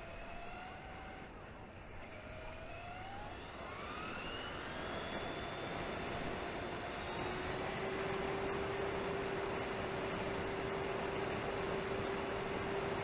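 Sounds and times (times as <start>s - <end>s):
electric motor whine: 2.8s - 13.0s.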